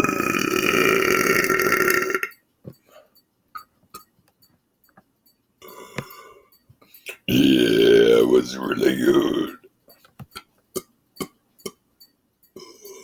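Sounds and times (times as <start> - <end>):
man burping: 0.0 - 2.3, 7.1 - 9.6, 12.6 - 13.0
small mouth clicks: 9.2 - 11.8.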